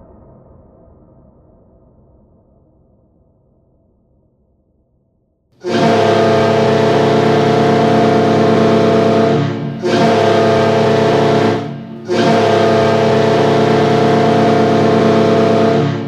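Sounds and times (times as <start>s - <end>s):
arena goal horn blasts: 5.6s - 16.0s.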